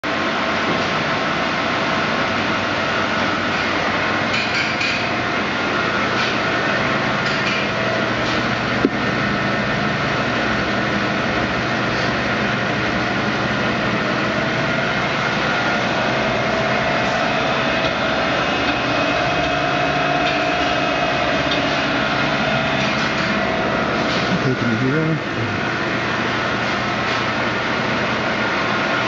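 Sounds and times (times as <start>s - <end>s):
machinery running: 0.0s - 29.0s
high whining tones: 13.1s - 27.1s.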